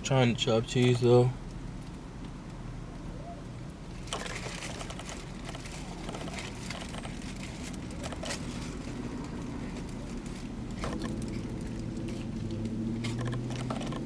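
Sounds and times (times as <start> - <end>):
low steady hum: 0.0 - 14.0
chewing sandwich: 4.1 - 14.0.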